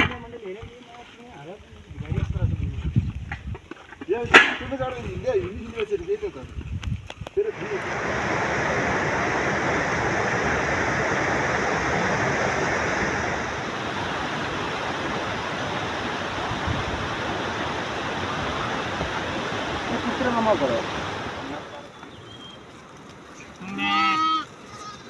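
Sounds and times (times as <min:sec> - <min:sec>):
flowing water rushing: 0:07.4 - 0:25.0.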